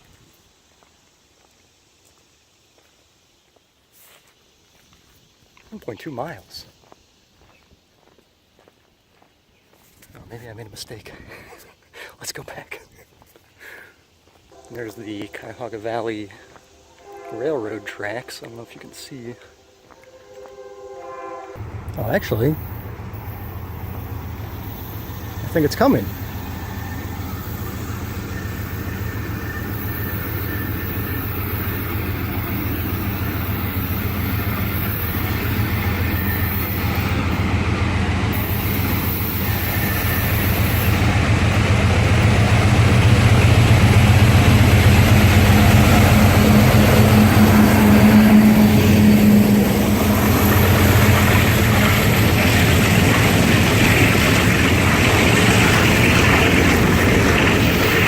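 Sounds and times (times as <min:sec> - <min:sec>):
rail noise: 0:00.0 - 0:58.0
diesel locomotive rumble: 0:21.5 - 0:58.0.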